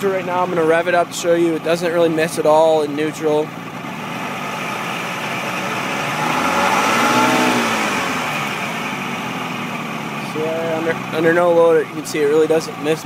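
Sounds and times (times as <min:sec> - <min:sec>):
outboard motor revving and idling: 0:00.0 - 0:13.0.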